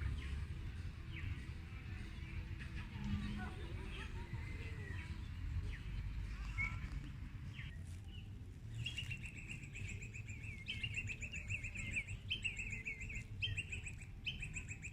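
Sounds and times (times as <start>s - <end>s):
low outdoor rumble: 0.0s - 14.9s
bird chirping rapidly: 8.8s - 14.9s.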